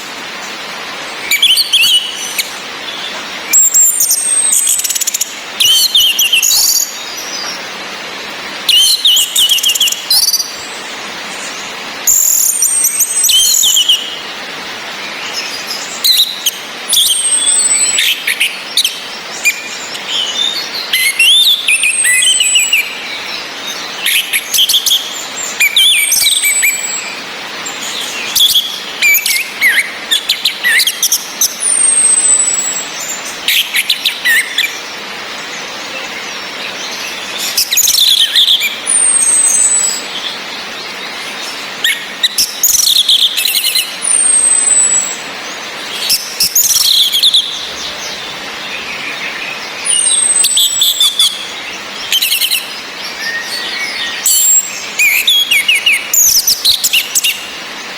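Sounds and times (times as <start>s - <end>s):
rain hiss: 0.0s - 57.9s
high falling bird whistles: 28.3s - 34.7s, 37.4s - 40.1s, 41.8s - 45.2s.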